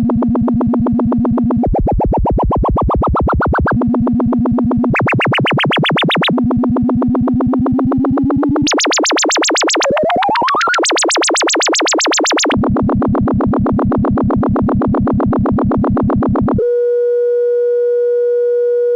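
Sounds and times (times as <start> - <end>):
rapid pulsing synth tones: 0.0 - 16.6
steady held synth tone: 0.0 - 16.7.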